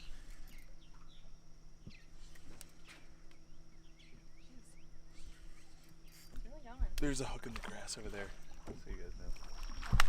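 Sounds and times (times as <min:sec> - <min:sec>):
small bird chirping: 0:00.0 - 0:06.5.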